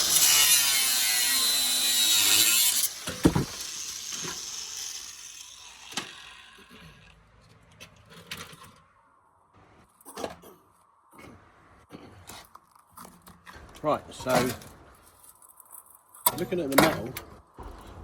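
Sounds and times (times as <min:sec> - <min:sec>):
power tool running: 0:00.0 - 0:07.1.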